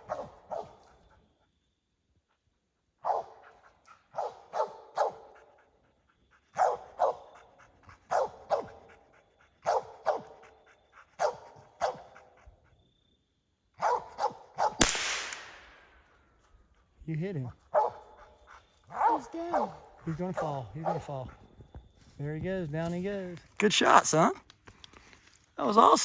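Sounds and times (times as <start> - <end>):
dog barking: 0.0 - 1.2, 2.9 - 12.8, 13.8 - 14.8, 17.7 - 21.4
rifle shot with echo: 14.8 - 15.9.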